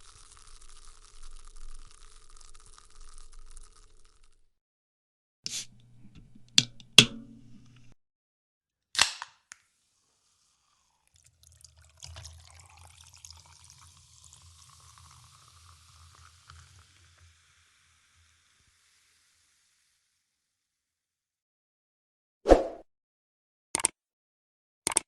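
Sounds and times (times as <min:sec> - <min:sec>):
can opening hiss: 0:00.0 - 0:04.4, 0:05.5 - 0:05.9
soda pouring and fizzing over ice: 0:00.0 - 0:04.5, 0:09.8 - 0:20.5
pull tab clicks: 0:05.5 - 0:07.9.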